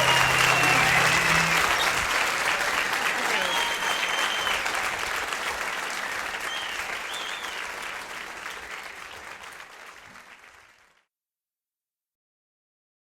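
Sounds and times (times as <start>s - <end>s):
whistle from audience: 0.0s - 2.2s, 3.1s - 4.9s, 6.0s - 7.7s
audience applause: 0.0s - 11.0s.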